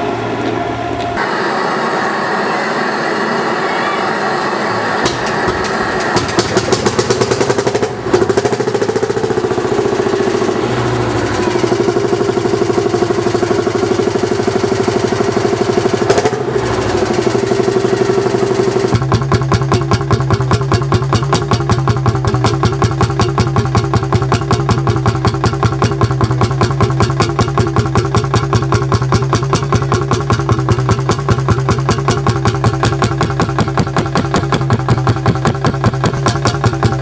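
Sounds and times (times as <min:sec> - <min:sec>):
tractor two-stroke engine running: 0:00.0 - 0:37.0.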